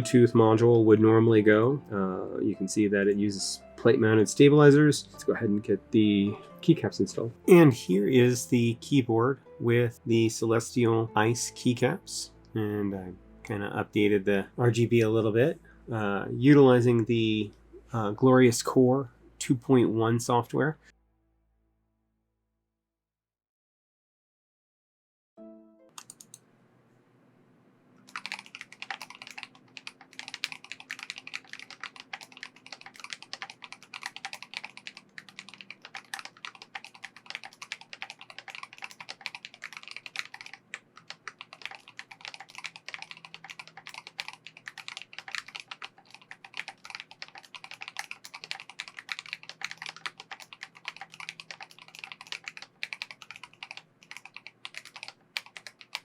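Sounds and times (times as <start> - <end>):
fast keyboard typing clacks: 28.1 - 56.0.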